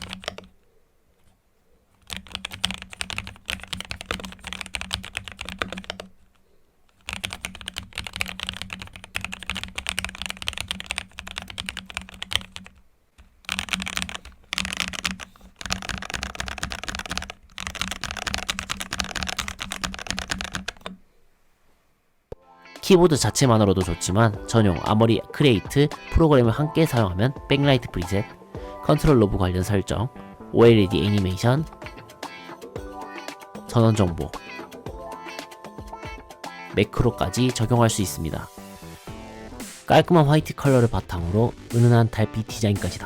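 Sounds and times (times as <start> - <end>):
mechanical keyboard typing: 0.0 - 0.5, 2.0 - 6.2, 6.9 - 21.0.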